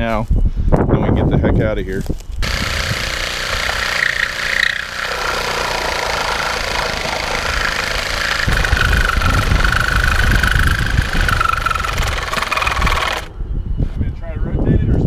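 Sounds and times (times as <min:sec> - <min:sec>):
reciprocating saw cutting metal: 0:02.4 - 0:13.3.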